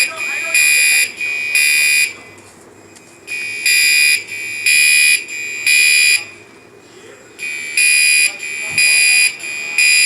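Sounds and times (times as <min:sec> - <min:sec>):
fire alarm horn blasts: 0:00.0 - 0:02.2, 0:03.3 - 0:06.4, 0:07.4 - 0:10.0.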